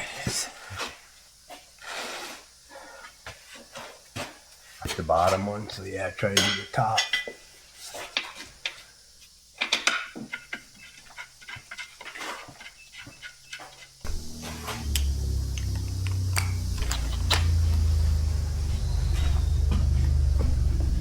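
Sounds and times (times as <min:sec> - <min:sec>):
loud low hum: 0:14.1 - 0:21.0.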